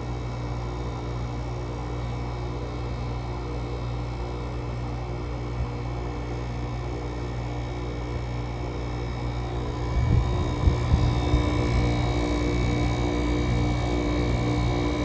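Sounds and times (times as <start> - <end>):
air conditioner humming: 8.5 - 15.0.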